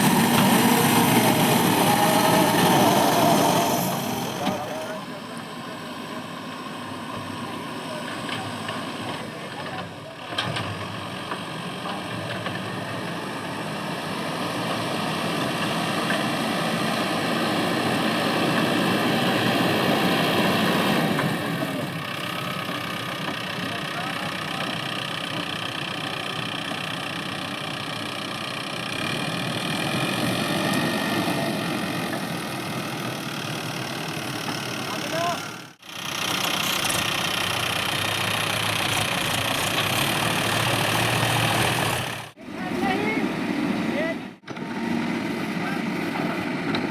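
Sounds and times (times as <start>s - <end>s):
diesel engine running: 0.0s - 46.9s
digging and loading soil: 29.0s - 46.9s.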